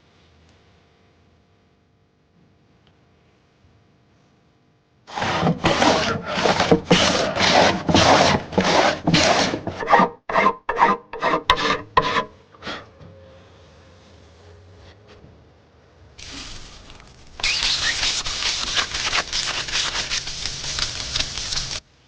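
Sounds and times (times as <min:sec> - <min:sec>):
hand tool scraping wood: 0:05.1 - 0:12.8, 0:17.4 - 0:21.8.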